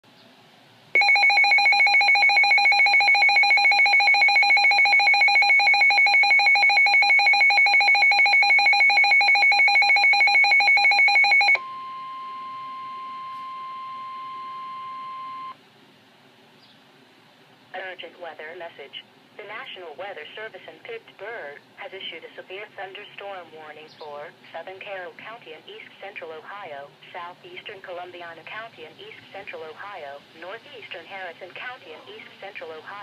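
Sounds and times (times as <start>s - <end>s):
rapidly pulsing electronic beep: 1.0s - 11.6s.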